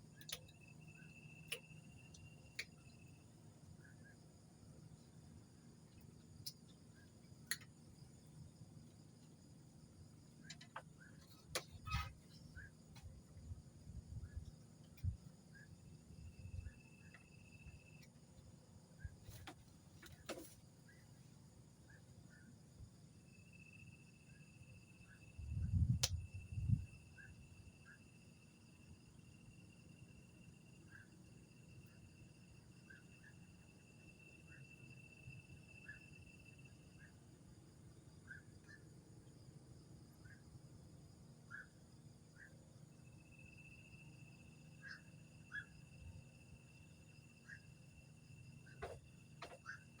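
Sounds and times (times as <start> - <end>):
insect trill: 0.0 - 50.0
low background hum: 0.0 - 50.0
short insect chirps: 0.0 - 50.0
sharp click: 26.0 - 26.2.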